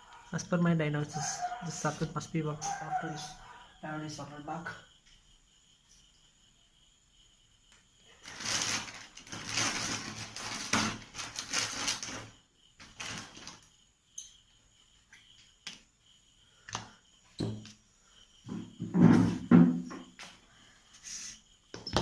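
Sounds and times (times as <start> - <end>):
rustling and scraping: 8.2 - 13.7.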